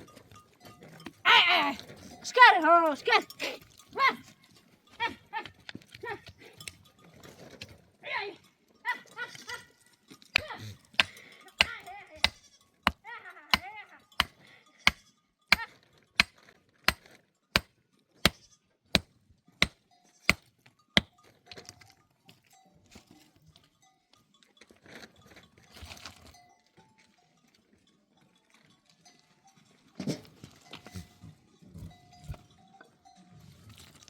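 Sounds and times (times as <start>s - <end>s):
livestock bells tinkling: 0.0s - 34.0s.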